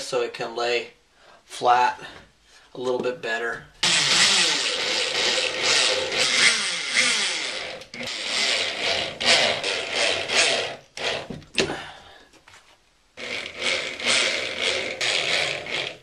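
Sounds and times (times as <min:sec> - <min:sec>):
power drill driving screws: 0:03.8 - 0:11.4, 0:13.2 - 0:16.0.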